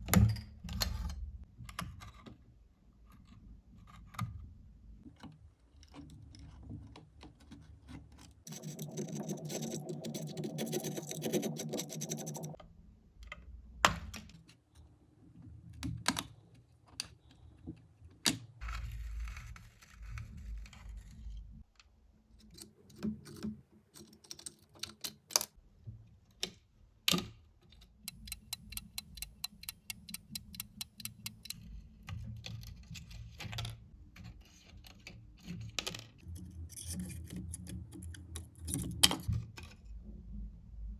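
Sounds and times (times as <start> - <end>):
clicks and taps on small parts: 26.4 - 32.8, 34.9 - 39.4.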